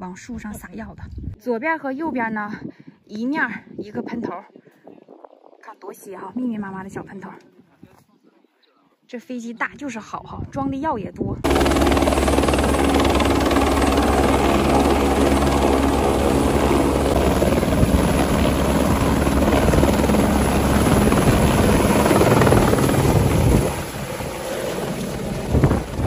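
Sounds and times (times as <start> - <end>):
helicopter engine and rotor: 11.4 - 26.0.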